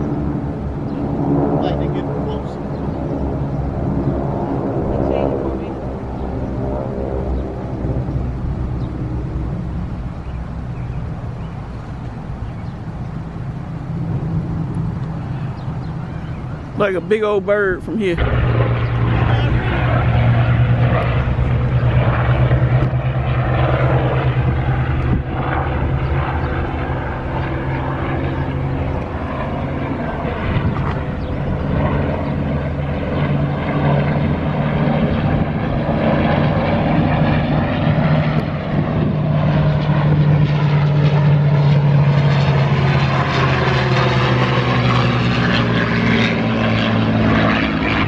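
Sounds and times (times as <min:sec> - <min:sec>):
propeller airplane engine droning: 0:00.0 - 0:48.0.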